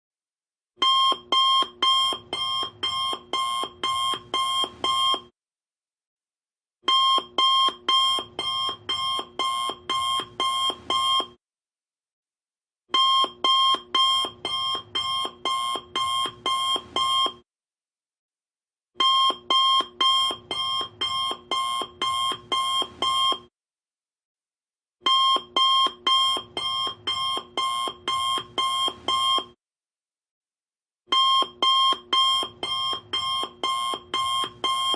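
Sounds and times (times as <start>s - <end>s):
alarm clock beeping: 0.8s - 5.2s, 6.9s - 11.3s, 13.0s - 17.4s, 19.0s - 23.4s, 25.1s - 29.5s, 31.1s - 34.9s.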